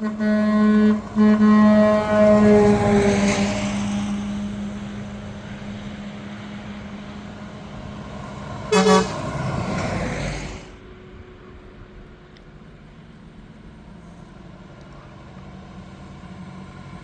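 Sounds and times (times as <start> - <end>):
truck horn toot: 0.0 - 4.6, 8.7 - 9.7
truck low drone: 0.0 - 17.0.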